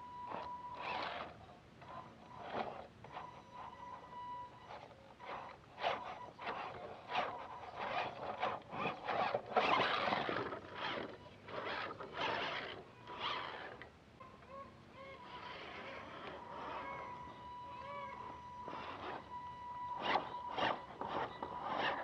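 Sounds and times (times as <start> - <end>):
toy car tyres crunching over ground: 5.2 - 13.9, 18.0 - 19.2, 20.0 - 22.0.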